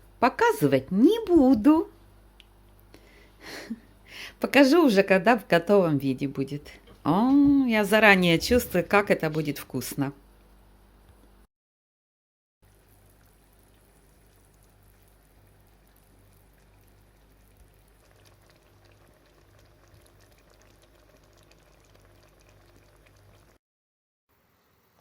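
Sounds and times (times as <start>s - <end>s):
pot simmering with small pops: 12.7s - 23.6s.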